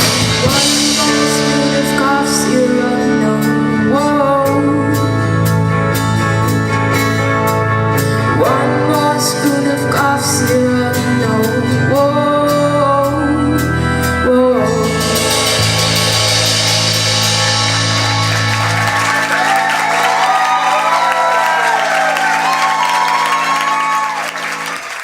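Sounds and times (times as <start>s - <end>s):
rock band playing: 0.0s - 25.0s
cymbal wash: 15.0s - 19.4s.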